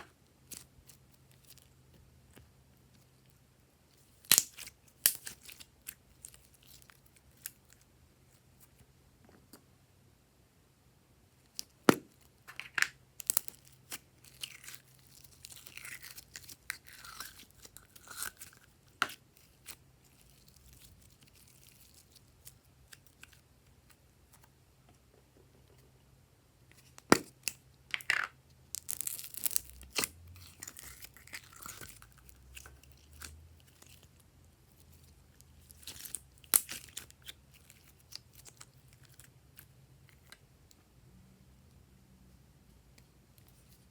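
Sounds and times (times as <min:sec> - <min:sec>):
slime crackling and popping: 0:04.1 - 0:07.6, 0:12.8 - 0:23.4, 0:28.7 - 0:34.1, 0:35.6 - 0:39.2.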